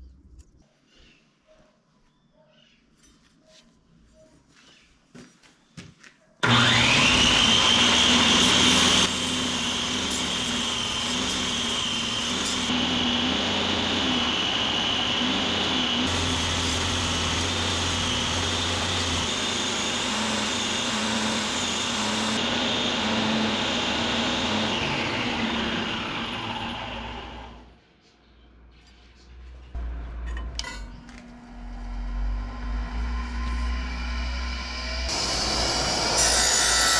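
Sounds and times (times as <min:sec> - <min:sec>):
power tool motor whine: 0:06.4 - 0:27.7, 0:31.7 - 0:36.9.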